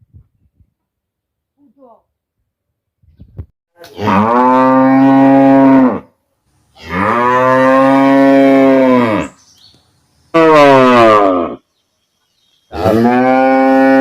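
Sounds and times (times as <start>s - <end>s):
cow mooing: 3.9s - 6.1s, 6.8s - 9.4s, 10.4s - 11.6s, 12.7s - 14.0s.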